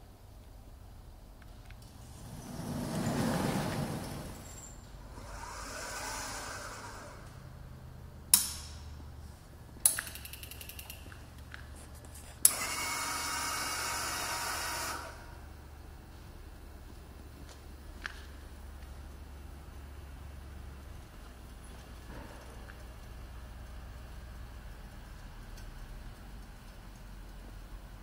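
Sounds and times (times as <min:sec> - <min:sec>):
cutting machine running: 0:05.2 - 0:07.3
sharp clicks: 0:08.3 - 0:08.9, 0:09.8 - 0:11.6.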